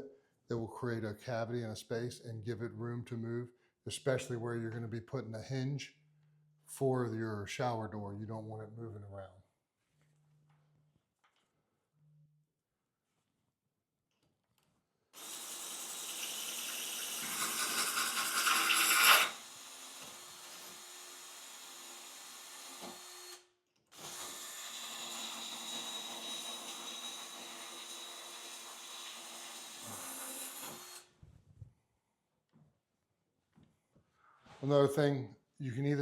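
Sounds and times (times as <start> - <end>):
drill grinding through tile: 15.2 - 23.4, 24.0 - 31.1.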